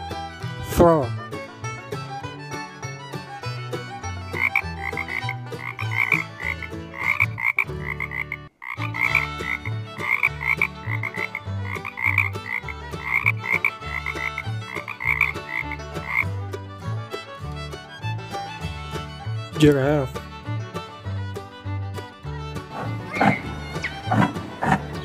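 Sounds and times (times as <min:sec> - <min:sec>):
frogs croaking: 0:04.4 - 0:16.3, 0:22.7 - 0:25.0.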